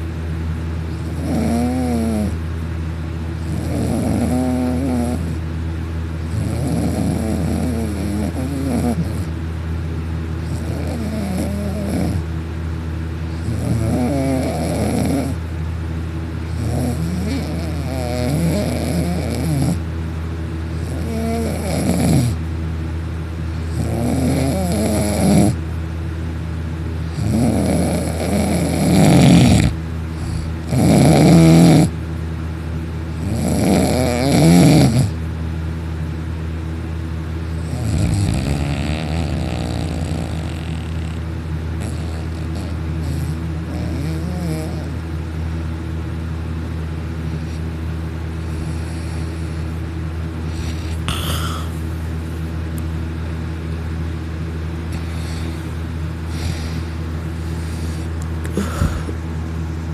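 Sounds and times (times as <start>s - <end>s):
man snoring with rattle: 0.9s - 2.4s, 3.4s - 5.4s, 6.2s - 9.4s, 10.4s - 12.3s, 13.3s - 15.5s, 16.5s - 19.9s, 20.7s - 22.5s, 23.5s - 25.6s, 27.0s - 32.0s, 33.1s - 35.2s, 37.5s - 45.0s, 47.3s - 47.7s, 48.4s - 49.8s, 50.4s - 51.9s, 54.9s - 59.2s.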